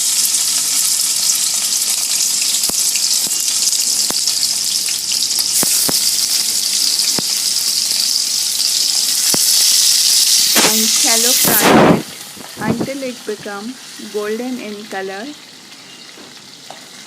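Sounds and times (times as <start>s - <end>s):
food sizzling in oil: 0.0s - 17.0s
oil spattering pops: 10.5s - 10.9s.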